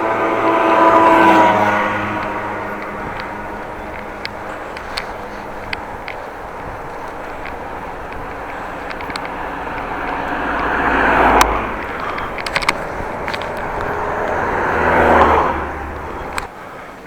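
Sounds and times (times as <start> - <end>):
bicycle wind and road noise: 0.0 - 17.0
traffic passing: 0.0 - 17.0
camera clicks and cracks: 2.2 - 15.4.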